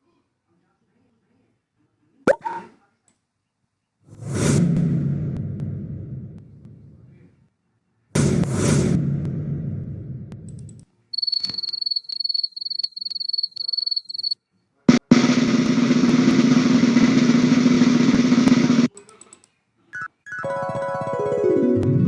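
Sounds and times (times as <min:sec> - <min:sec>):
low rumble: 0:04.1 - 0:07.4, 0:08.2 - 0:10.7
crickets chirping: 0:11.1 - 0:14.4
snare drum roll: 0:14.9 - 0:18.9.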